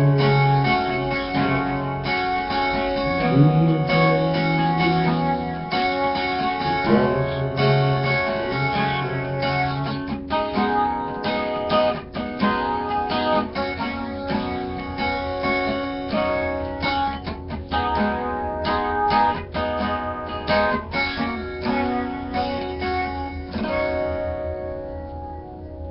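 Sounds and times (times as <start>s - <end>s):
plucked and strummed guitar: 0.0s - 25.9s.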